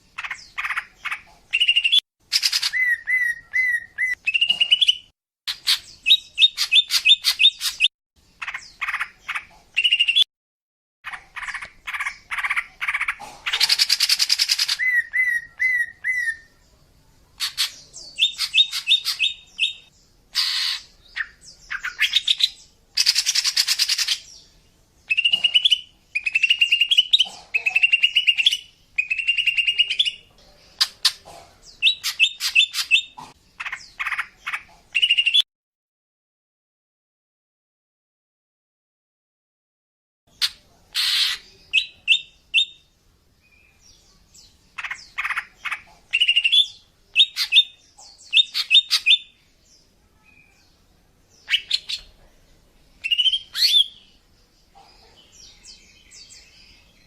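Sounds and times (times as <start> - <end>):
bird singing chirps and trills: 0.0 - 10.3, 11.1 - 35.4, 40.3 - 57.0
harsh rasping bird calls: 0.1 - 10.3, 11.0 - 16.6, 17.4 - 24.4, 25.0 - 35.4, 40.3 - 42.9, 44.4 - 49.4, 51.4 - 52.2, 53.0 - 54.2.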